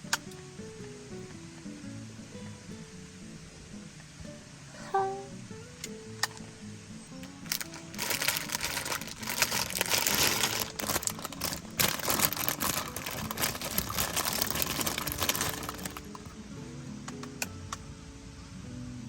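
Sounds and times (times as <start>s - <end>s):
food sizzling and crackling: 7.2s - 16.3s.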